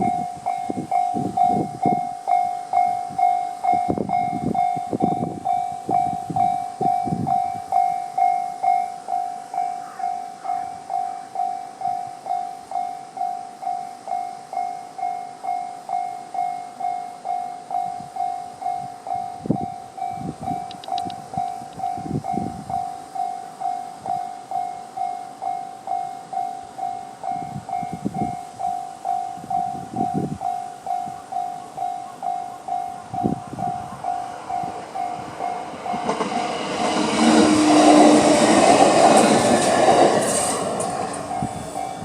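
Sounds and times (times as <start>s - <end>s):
train wheel thuds and rumble: 34.7s - 41.6s.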